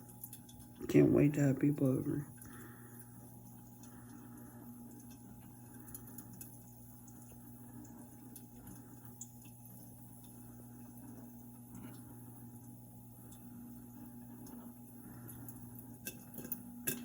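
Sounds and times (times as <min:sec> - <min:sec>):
popcorn popping: 0:15.3 - 0:17.0.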